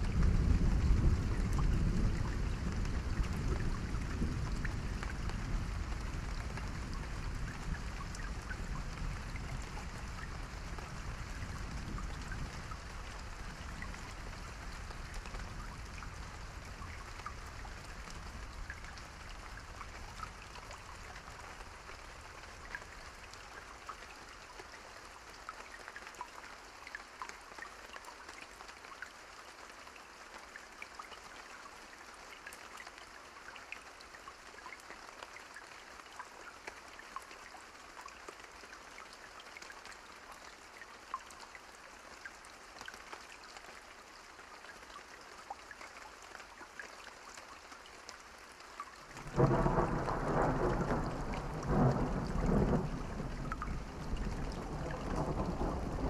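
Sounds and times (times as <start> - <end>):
steady rain pattering: 0.0 - 56.0
low thunder rumble: 49.2 - 56.0.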